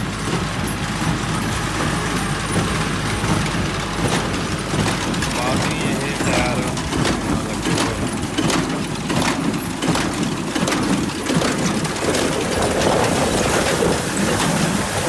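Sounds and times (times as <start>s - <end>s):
tractor engine running: 0.0s - 15.0s
baler knocking: 0.3s - 10.8s.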